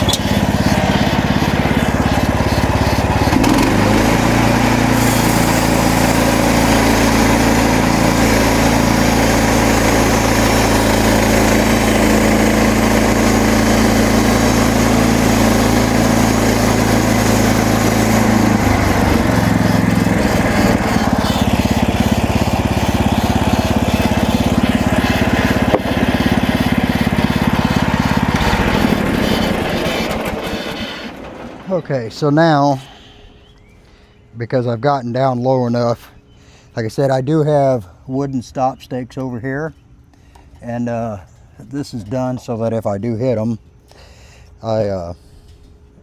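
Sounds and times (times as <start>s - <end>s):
band blade cutting log: 0.0s - 31.2s
gas engine running: 0.0s - 33.7s.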